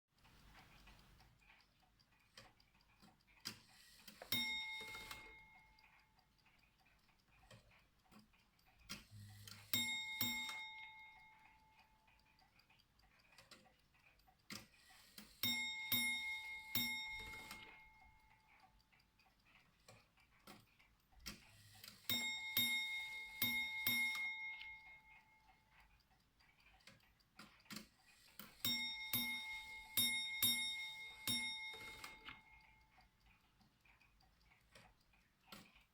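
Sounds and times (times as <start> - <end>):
faint clock ticking: 0.1 - 35.9
ship's bell clock striking: 4.3 - 5.5, 15.4 - 18.0, 22.1 - 25.4, 28.6 - 32.5.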